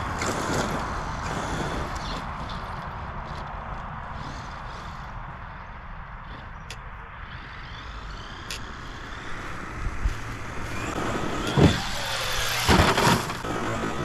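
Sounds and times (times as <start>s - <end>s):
rc car motor whining: 7.2s - 14.0s
toy truck thumping ground: 10.6s - 14.0s.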